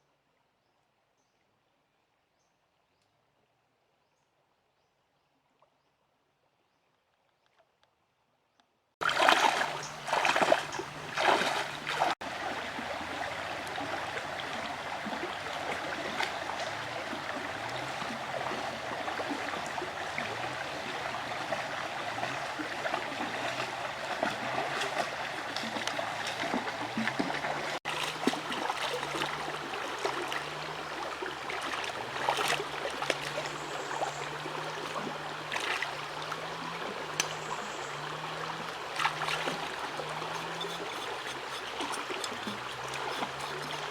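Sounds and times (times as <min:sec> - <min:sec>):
stream water flowing: 0:09.0 - 0:43.9
water splashes: 0:09.0 - 0:43.9.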